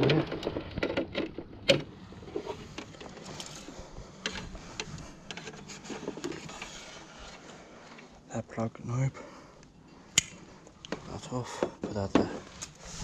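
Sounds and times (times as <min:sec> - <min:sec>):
cable handling clicks and rubbing: 0:00.0 - 0:08.0.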